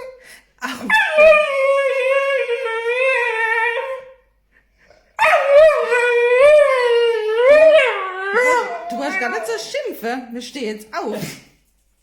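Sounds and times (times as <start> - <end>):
dog howling whine: 0.9 - 4.2, 5.2 - 9.5.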